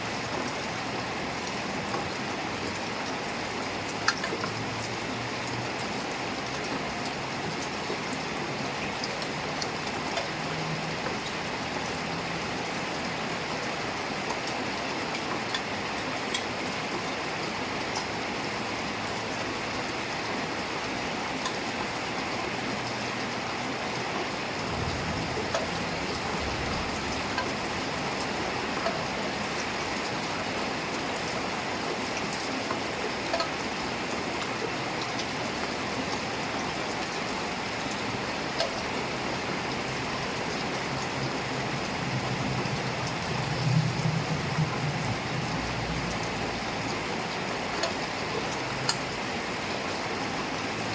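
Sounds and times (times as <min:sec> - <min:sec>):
heavy rain falling: 0:00.0 - 0:50.9
sharp raindrop ticks: 0:01.4 - 0:18.2, 0:21.0 - 0:50.0.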